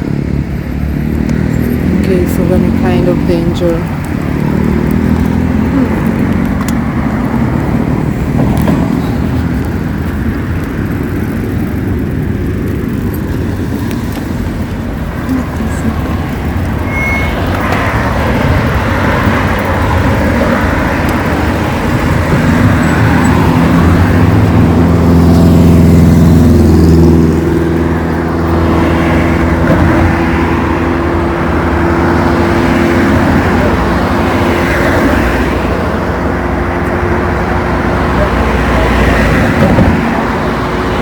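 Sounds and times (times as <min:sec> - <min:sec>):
traffic noise: 0:00.0 - 0:41.0
vehicle engine passing close: 0:00.0 - 0:41.0.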